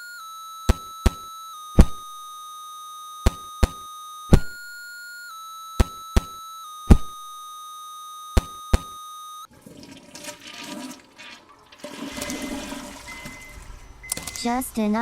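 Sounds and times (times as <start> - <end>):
sharp thumps: 0.7 - 2.2, 3.2 - 4.8, 5.8 - 7.3, 8.4 - 9.0
steady electronic tone: 3.1 - 4.8, 5.7 - 9.5.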